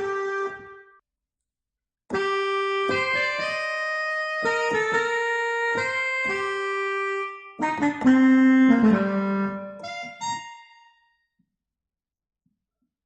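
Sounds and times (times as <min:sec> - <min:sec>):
keyboard melody: 0:00.0 - 0:00.9, 0:02.1 - 0:11.1.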